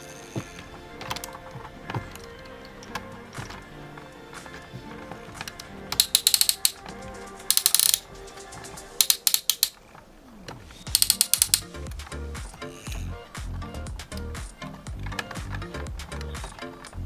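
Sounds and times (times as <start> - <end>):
quiet background music: 0.0 - 17.0
toy ratchet joint clicking: 5.9 - 6.8, 7.5 - 8.1, 9.0 - 9.8, 10.9 - 13.1.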